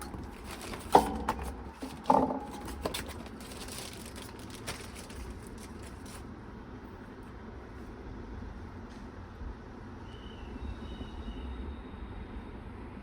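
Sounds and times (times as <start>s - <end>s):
packaging rustling: 0.0s - 6.3s
object set down with a knock: 0.9s - 3.0s.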